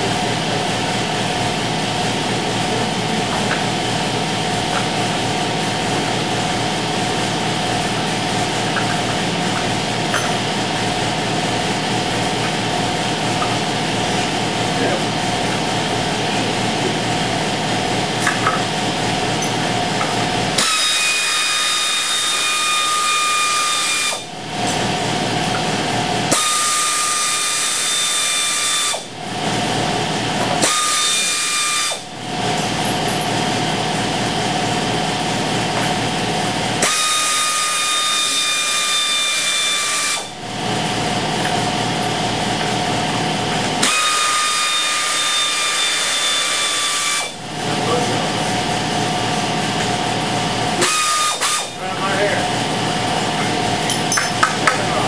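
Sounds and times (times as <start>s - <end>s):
compressor pulsing hum: 0.0s - 55.0s.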